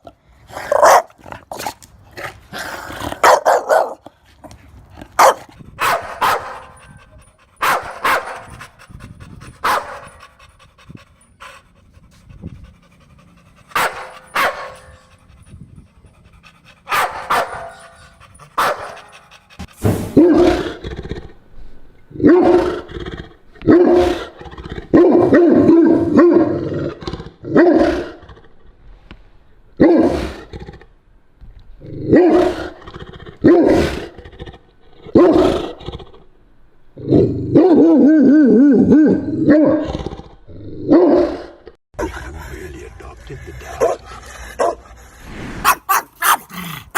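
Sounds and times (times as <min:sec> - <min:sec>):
deeper dog bark: 0:00.8 - 0:01.1, 0:03.2 - 0:04.0, 0:05.2 - 0:06.7, 0:07.6 - 0:08.5, 0:09.6 - 0:10.1, 0:13.7 - 0:15.0, 0:16.9 - 0:18.0, 0:18.6 - 0:19.0, 0:45.6 - 0:46.8
dog barking sharply: 0:00.8 - 0:01.1, 0:03.2 - 0:04.0, 0:05.2 - 0:06.6, 0:07.6 - 0:08.4, 0:13.8 - 0:14.8, 0:16.9 - 0:17.8, 0:18.6 - 0:19.0, 0:45.6 - 0:46.6.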